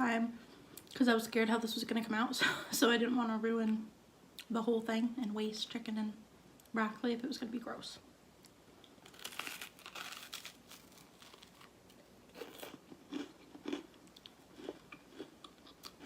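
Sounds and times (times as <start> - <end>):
crunchy bread chewing: 8.8 - 16.0.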